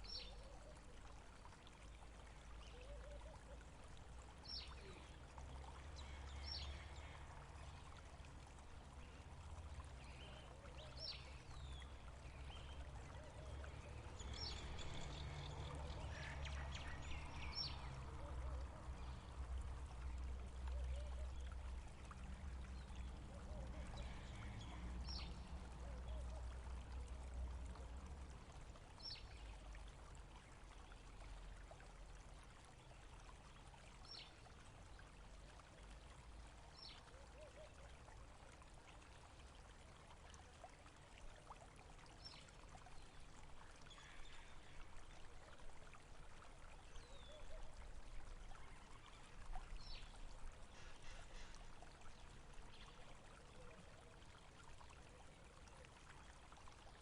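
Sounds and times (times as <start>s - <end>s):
water flowing: 0.0s - 57.0s.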